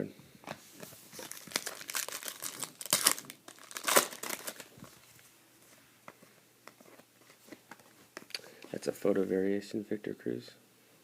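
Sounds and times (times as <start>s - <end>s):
wrapper crinkling and tearing: 1.2s - 5.0s.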